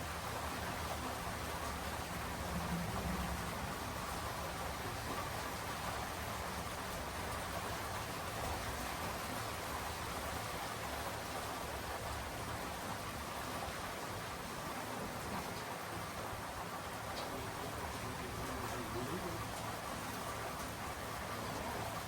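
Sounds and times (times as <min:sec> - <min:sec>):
steady rain hiss: 0:00.0 - 0:22.0.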